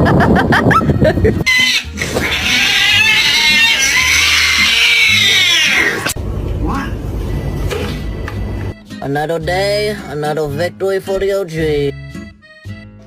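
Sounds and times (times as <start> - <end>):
cat crying: 1.5 - 6.2.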